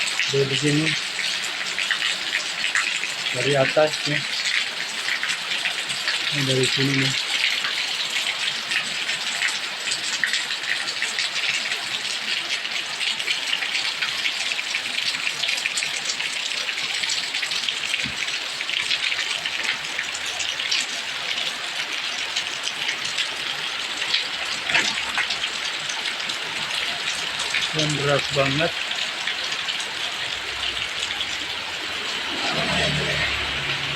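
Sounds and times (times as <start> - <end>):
heavy rain pouring: 0.0 - 33.9
sharp drip impacts: 22.3 - 33.5.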